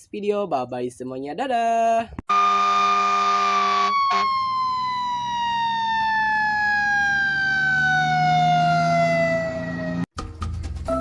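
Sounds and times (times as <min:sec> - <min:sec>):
siren-like tone sliding down: 0:03.8 - 0:10.1.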